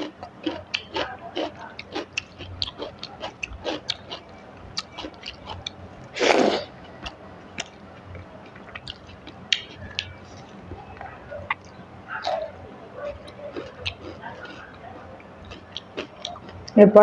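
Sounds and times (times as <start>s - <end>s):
wet chewing: 0.0s - 16.8s
lip-smacking clicks: 7.0s - 16.8s.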